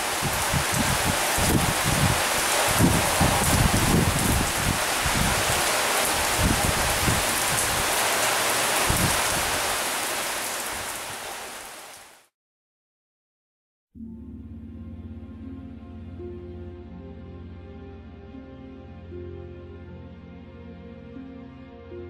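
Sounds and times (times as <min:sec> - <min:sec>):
low rumbling gusts: 0:00.0 - 0:11.4
heavy rain falling: 0:00.0 - 0:12.3.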